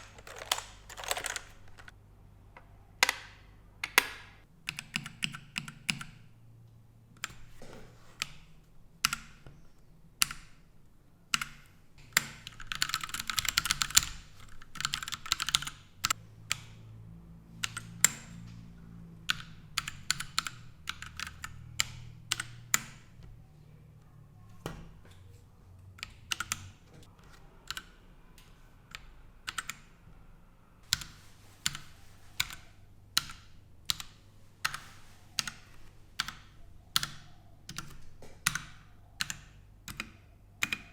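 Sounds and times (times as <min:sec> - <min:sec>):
mechanical keyboard typing: 0:00.0 - 0:02.0, 0:03.0 - 0:06.3, 0:11.3 - 0:16.8, 0:17.5 - 0:18.6, 0:19.2 - 0:23.2, 0:25.9 - 0:26.9, 0:27.6 - 0:28.0, 0:28.9 - 0:29.9, 0:30.9 - 0:40.9.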